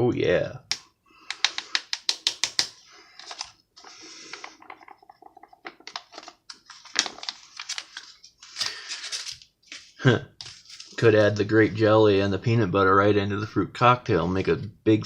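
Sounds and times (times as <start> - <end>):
small clicks and taps: 0.7 - 2.7
foil pouch crinkling: 5.8 - 9.9.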